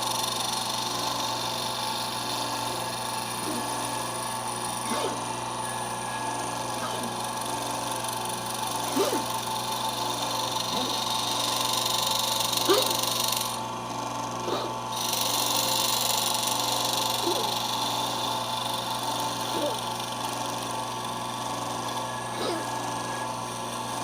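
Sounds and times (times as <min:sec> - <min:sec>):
router spindle whine and hiss: 0:00.0 - 0:24.0.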